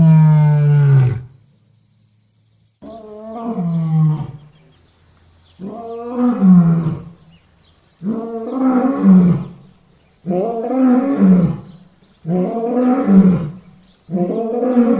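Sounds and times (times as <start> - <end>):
lion roaring: 0.0 - 1.3, 2.8 - 4.5, 5.6 - 7.2, 10.2 - 14.9.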